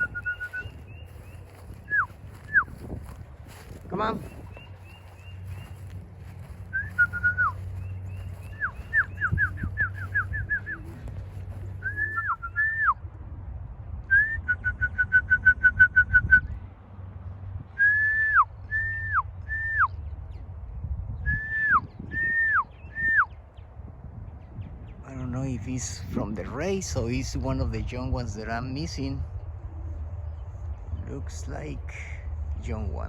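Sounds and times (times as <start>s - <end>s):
person whistling: 6.8s - 7.5s.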